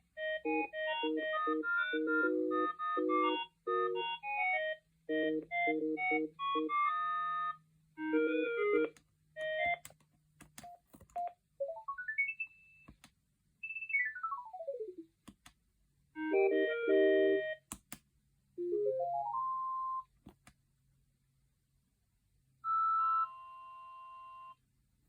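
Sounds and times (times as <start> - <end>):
electronic phone ringtones: 0.4 - 9.7, 22.7 - 24.6
sharp clicks: 17.6 - 18.0.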